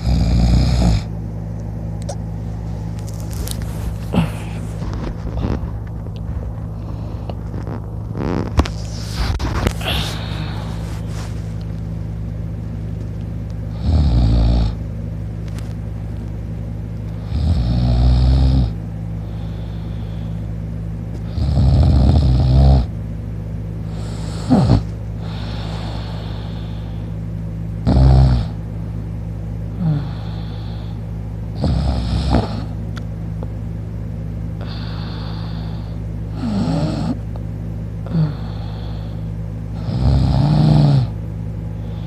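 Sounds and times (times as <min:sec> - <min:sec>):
man snoring: 0:00.0 - 0:01.1, 0:04.0 - 0:04.6, 0:09.8 - 0:10.8, 0:13.7 - 0:14.8, 0:17.2 - 0:20.4, 0:21.2 - 0:22.9, 0:23.9 - 0:27.0, 0:27.8 - 0:28.6, 0:29.7 - 0:32.8, 0:34.6 - 0:37.2, 0:38.0 - 0:41.2
steady low hum: 0:00.0 - 0:42.0
breathy exhales: 0:03.8 - 0:05.6, 0:08.8 - 0:11.6, 0:19.2 - 0:20.6, 0:23.8 - 0:27.3, 0:29.7 - 0:31.2, 0:34.6 - 0:36.9, 0:38.0 - 0:39.4.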